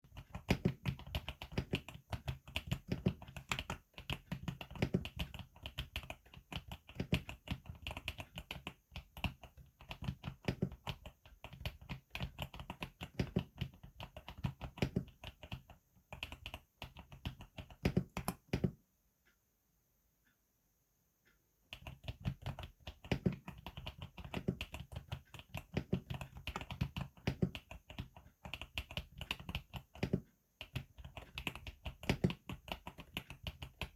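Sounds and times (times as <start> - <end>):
mechanical keyboard typing: 0.1 - 18.8, 21.7 - 33.9.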